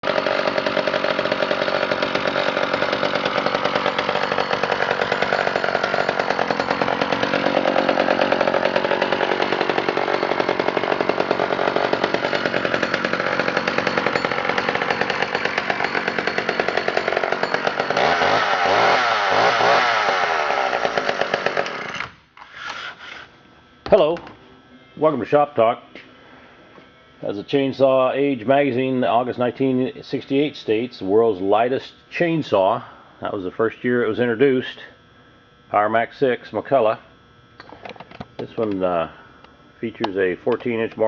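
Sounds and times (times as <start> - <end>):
chainsaw engine running hard: 0.0 - 22.1.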